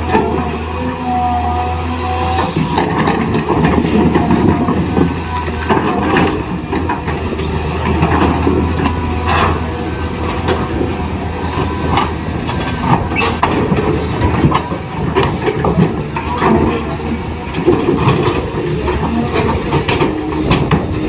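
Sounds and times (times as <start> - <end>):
small gear motors whirring: 2.4 - 21.0.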